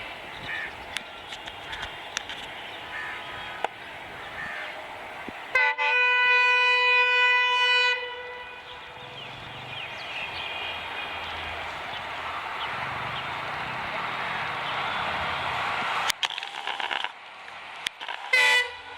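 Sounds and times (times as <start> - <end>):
locomotive air horn: 5.5 - 9.2, 18.1 - 18.9.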